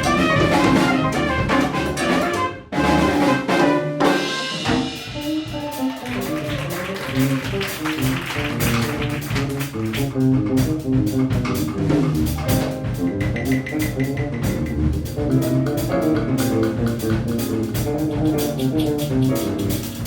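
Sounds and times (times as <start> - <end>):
latin jazz band playing: 0.0 - 20.0
repeating bass line: 8.0 - 20.0.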